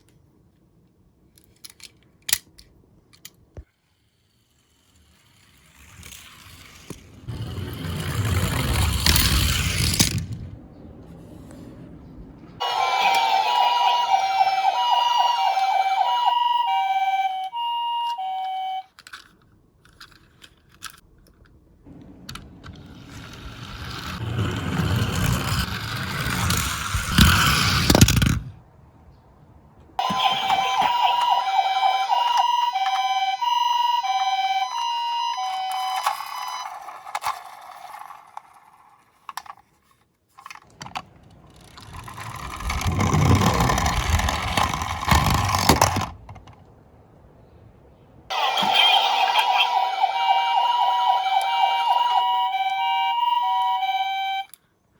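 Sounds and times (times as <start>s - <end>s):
toy car rolling down slope: 3.2s - 10.5s, 12.6s - 21.4s, 22.2s - 28.6s, 30.0s - 46.7s, 48.3s - 54.6s
toy two-tone siren: 12.6s - 19.0s, 30.0s - 38.2s, 48.3s - 54.6s.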